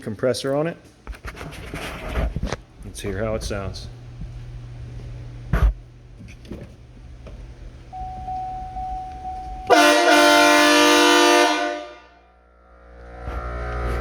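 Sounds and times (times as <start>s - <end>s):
train horn blast: 9.5s - 12.7s.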